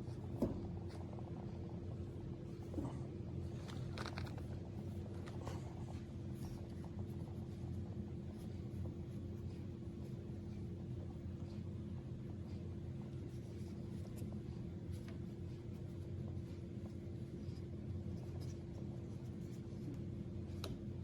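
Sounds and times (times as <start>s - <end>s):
low electrical hum: 0.0s - 21.0s
scraping and clicking handling noises: 3.5s - 5.7s.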